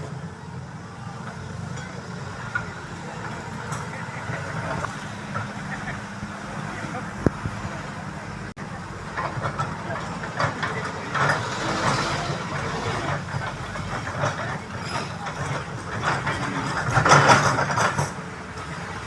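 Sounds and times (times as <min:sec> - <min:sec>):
excavator diesel engine running: 0:00.0 - 0:19.0
scraping and clattering from digging: 0:09.1 - 0:18.3.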